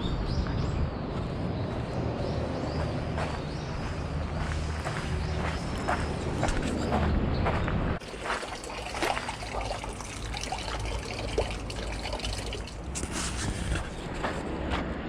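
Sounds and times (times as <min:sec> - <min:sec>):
water trickling and splashing: 0:08.0 - 0:14.1.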